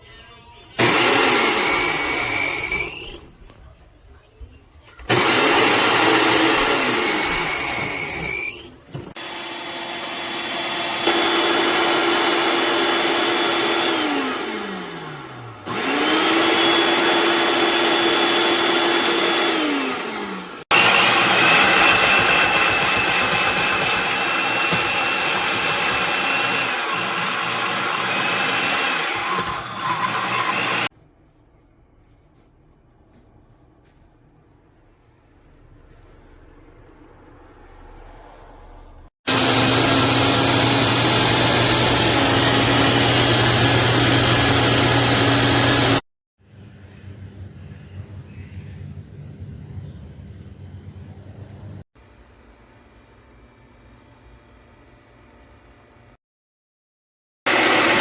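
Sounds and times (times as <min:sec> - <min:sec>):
blender motor running: 0:00.8 - 0:03.3, 0:05.1 - 0:30.9, 0:39.3 - 0:46.0, 0:57.5 - 0:58.0.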